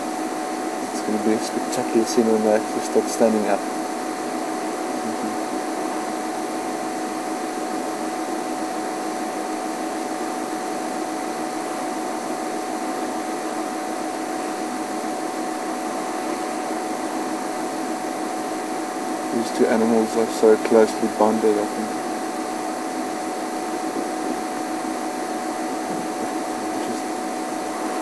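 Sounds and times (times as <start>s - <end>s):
steady hiss: 0.0s - 4.0s, 10.8s - 28.0s
constant whine: 0.0s - 28.0s.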